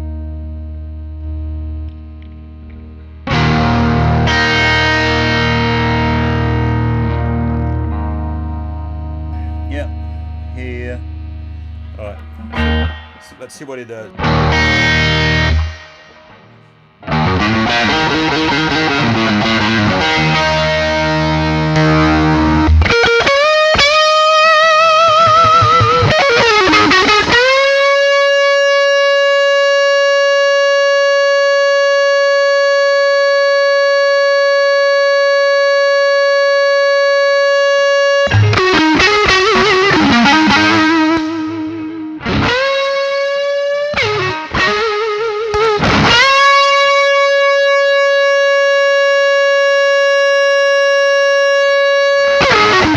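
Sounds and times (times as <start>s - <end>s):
overdriven electric guitar: 0.0s - 52.9s.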